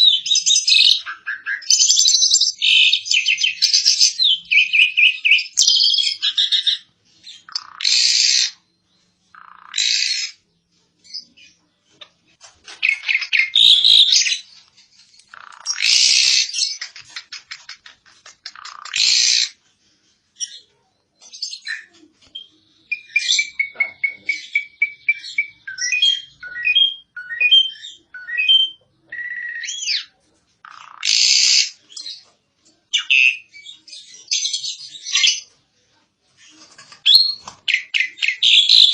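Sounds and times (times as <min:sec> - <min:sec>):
starling harsh chattering song: 0:12.6 - 0:19.6.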